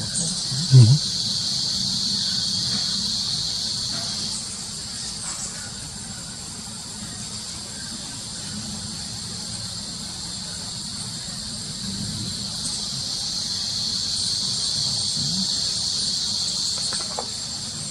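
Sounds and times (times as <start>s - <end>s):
insects buzzing shrilly: 0.0s - 5.8s, 8.5s - 17.9s.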